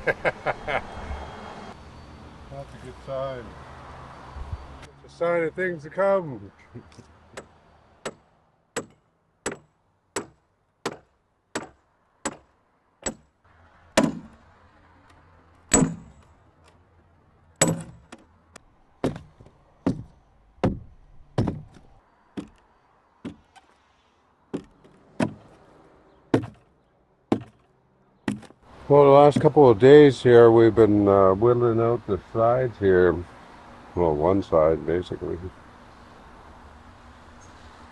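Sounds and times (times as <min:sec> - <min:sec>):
hand tool chopping wood: 0:08.8 - 0:13.2, 0:14.0 - 0:14.4, 0:15.7 - 0:16.2, 0:17.6 - 0:18.2, 0:19.0 - 0:21.8, 0:22.4 - 0:22.6, 0:23.2 - 0:23.5, 0:24.5 - 0:25.5, 0:26.3 - 0:26.6, 0:27.3 - 0:27.7, 0:28.3 - 0:28.6.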